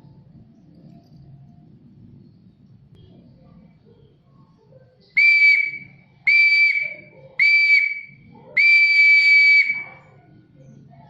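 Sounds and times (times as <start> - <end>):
exhaust turbo whistle: 5.2 - 9.9.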